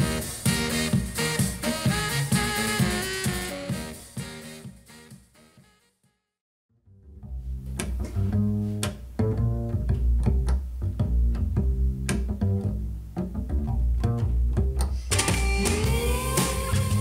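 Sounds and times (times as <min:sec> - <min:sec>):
plucked double bass: 0:06.8 - 0:17.0.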